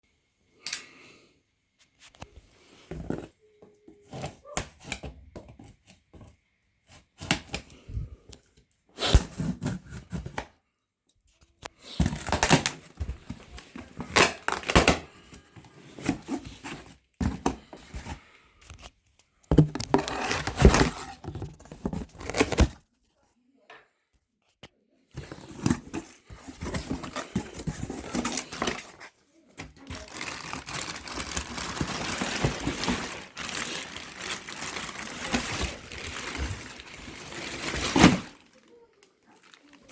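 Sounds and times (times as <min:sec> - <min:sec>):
packaging tearing and crinkling: 0:14.0 - 0:15.0, 0:29.8 - 0:38.7.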